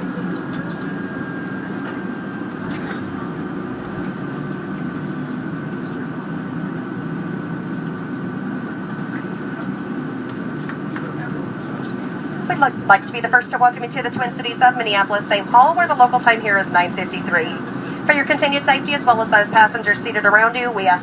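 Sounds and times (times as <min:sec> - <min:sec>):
aircraft cabin engine rumble: 0:00.0 - 0:21.0
high whine: 0:00.0 - 0:21.0.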